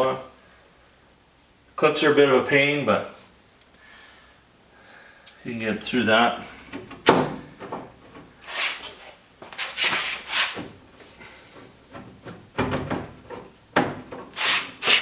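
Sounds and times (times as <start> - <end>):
tools knocking and scraping: 11.6 - 15.0.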